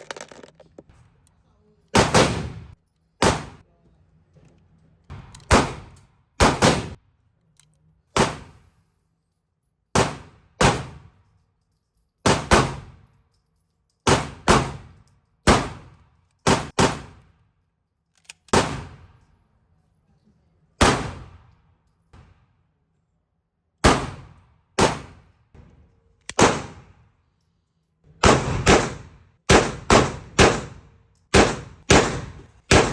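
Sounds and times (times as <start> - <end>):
airsoft pistol shots: 26.3 - 26.8, 28.2 - 32.9.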